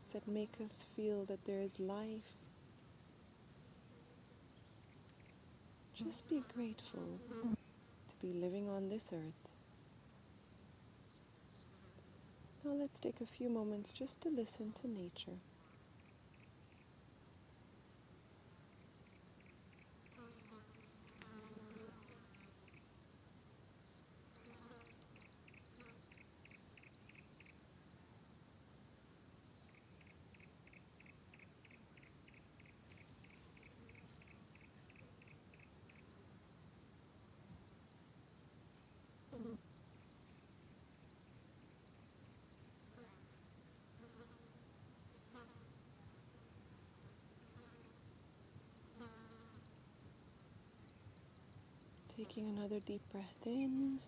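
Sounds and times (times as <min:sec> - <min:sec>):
insect steady chirp: 0:04.6 - 0:06.7, 0:11.0 - 0:11.8, 0:18.7 - 0:22.9, 0:23.5 - 0:43.0, 0:45.1 - 0:54.0
sharp high insect chirps: 0:23.8 - 0:28.9.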